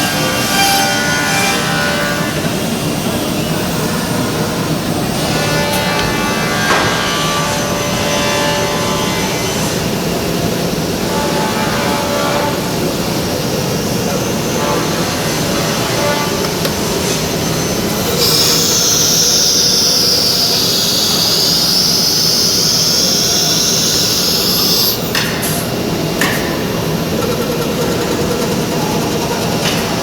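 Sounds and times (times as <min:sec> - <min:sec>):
high-pitched machine whine: 0:00.0 - 0:30.0
machining centre running: 0:00.0 - 0:30.0.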